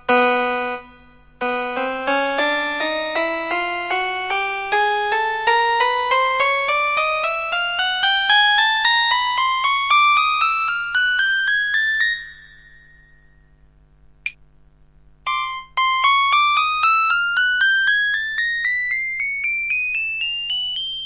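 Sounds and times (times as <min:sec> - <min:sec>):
digital piano rising runs: 0:00.0 - 0:12.6.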